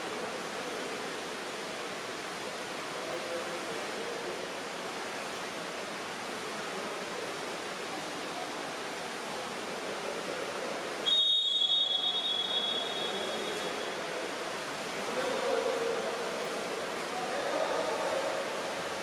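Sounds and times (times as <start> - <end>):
pool hall ambience hiss: 0.0 - 19.0
shrill whistle blast: 11.0 - 13.7.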